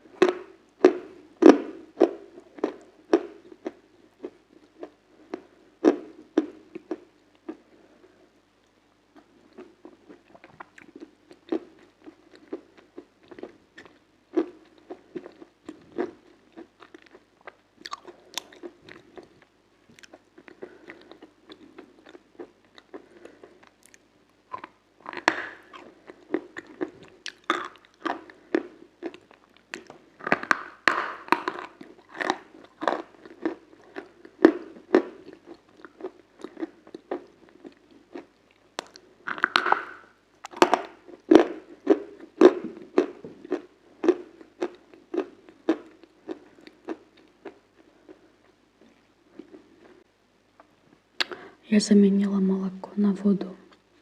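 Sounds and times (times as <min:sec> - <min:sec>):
crunchy food chewing: 0:09.1 - 0:51.4.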